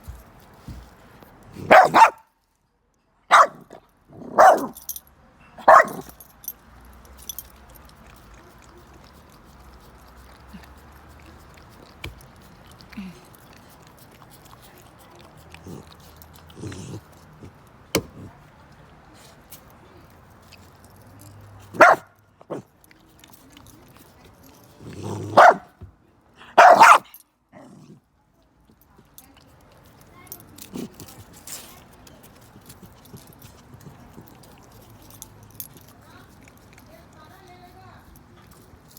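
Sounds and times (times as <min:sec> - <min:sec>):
dog barking: 0:01.6 - 0:02.3, 0:03.3 - 0:04.8, 0:05.6 - 0:06.1, 0:21.8 - 0:22.6, 0:25.3 - 0:25.7, 0:26.6 - 0:27.1.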